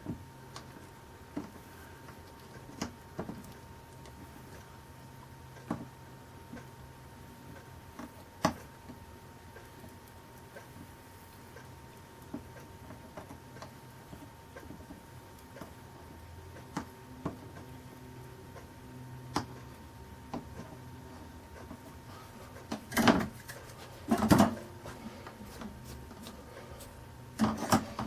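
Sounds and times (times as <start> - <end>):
faint steady hum: 0.0 - 28.0.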